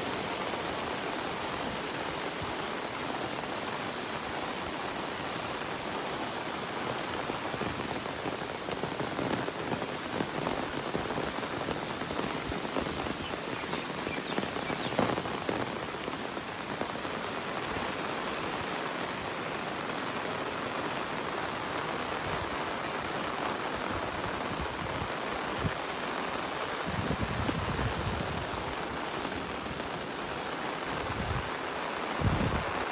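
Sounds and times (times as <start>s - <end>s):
steady rain falling: 0.0s - 32.9s.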